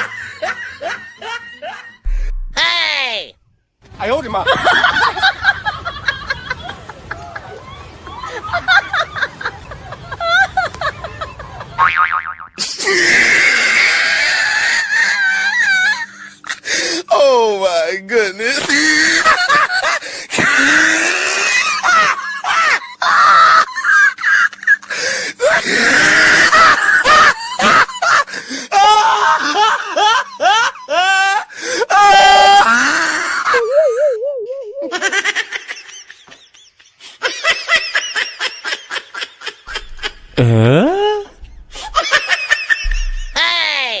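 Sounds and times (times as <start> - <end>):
wobbling tone: 2.1 - 2.7, 39.8 - 42.0, 42.9 - 43.5
people laughing and shrieking: 4.5 - 11.8, 12.9 - 16.6, 18.7 - 36.3
sliding tone: 39.7 - 42.0, 42.8 - 43.4.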